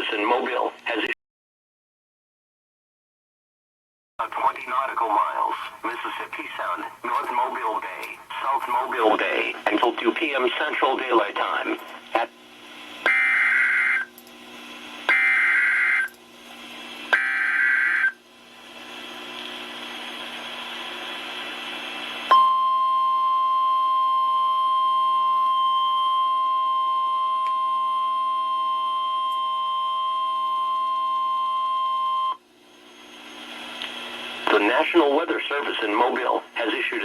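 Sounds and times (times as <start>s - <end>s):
steady warning alarm tone: 13.0s - 14.2s, 15.0s - 16.2s, 17.1s - 18.2s, 22.3s - 33.4s.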